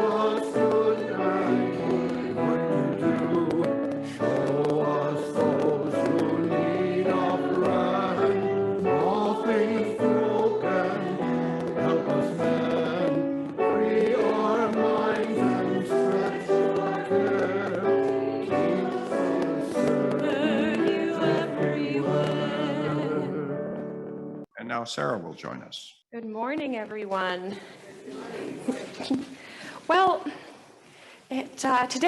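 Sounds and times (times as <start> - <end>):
group singing a hymn: 0.0 - 23.9.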